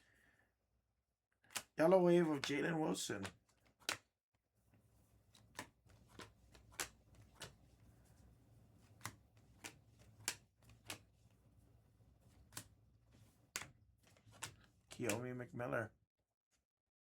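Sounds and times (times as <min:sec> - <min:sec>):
trading cards flipped by hand: 0:01.5 - 0:02.6, 0:03.2 - 0:04.1, 0:04.7 - 0:15.3.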